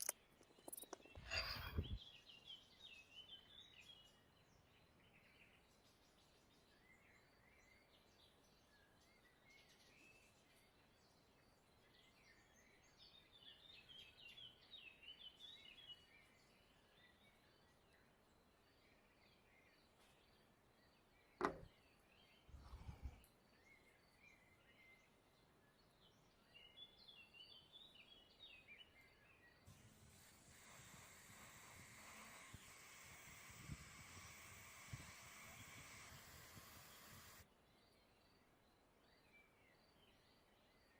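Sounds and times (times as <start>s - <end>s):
faint birds chirping: 0.0s - 40.9s
faint hiss: 29.7s - 37.4s.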